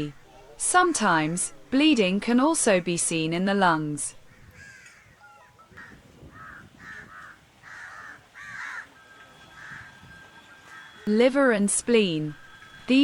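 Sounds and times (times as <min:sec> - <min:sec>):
crows cawing: 0:04.3 - 0:10.0, 0:10.6 - 0:11.0.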